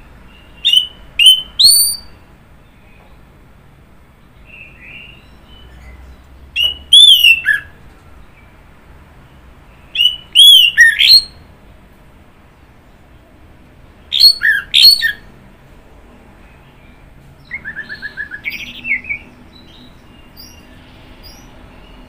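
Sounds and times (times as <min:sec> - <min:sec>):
thrush singing whistled notes: 0:00.3 - 0:02.2, 0:04.4 - 0:07.8, 0:09.8 - 0:11.5, 0:14.1 - 0:15.3, 0:16.8 - 0:22.0.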